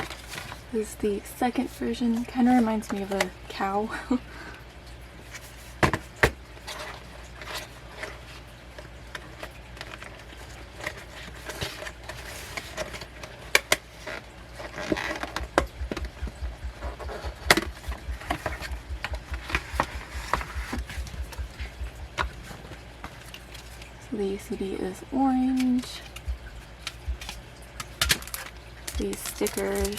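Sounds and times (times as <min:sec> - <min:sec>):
sharp knocks: 0:15.4 - 0:22.6.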